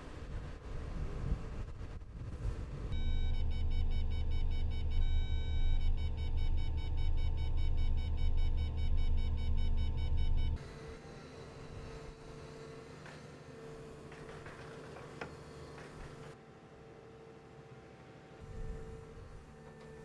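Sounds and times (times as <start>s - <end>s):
excavator engine running: 2.8s - 16.4s.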